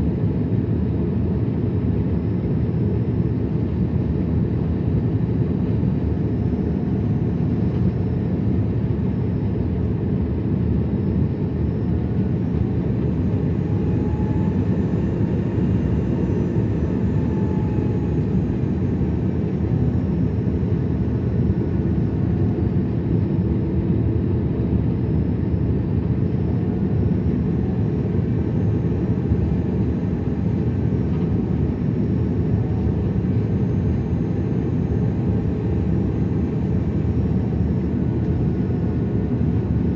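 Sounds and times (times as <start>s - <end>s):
jet engine cabin rumble: 0.0s - 39.9s.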